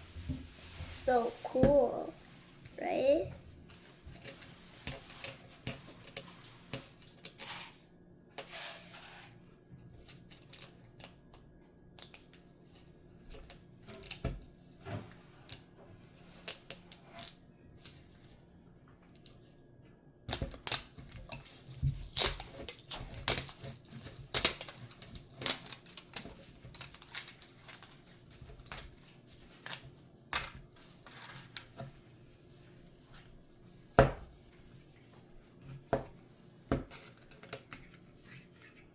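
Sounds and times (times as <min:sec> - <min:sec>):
packaging scraping rustle: 0:03.7 - 0:07.8, 0:08.5 - 0:09.4, 0:20.8 - 0:29.9, 0:30.7 - 0:33.4.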